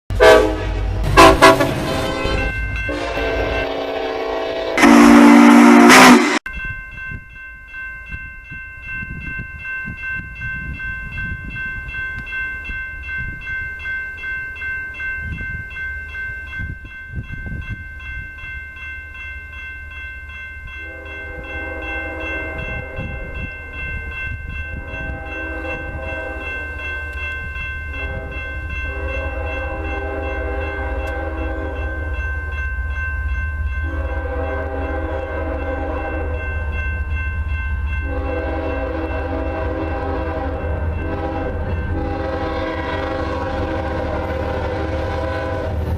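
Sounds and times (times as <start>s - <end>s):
locomotive air horn blasts: 0.1s - 6.5s, 20.8s - 23.4s, 24.7s - 27.2s, 28.0s - 32.0s, 33.8s - 36.4s, 38.0s - 45.9s.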